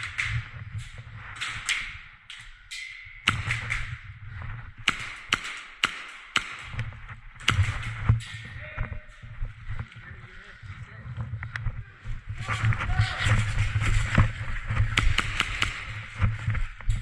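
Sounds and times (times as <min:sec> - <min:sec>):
airsoft gun shots: 0:03.3 - 0:04.0, 0:04.8 - 0:08.1, 0:15.0 - 0:16.1.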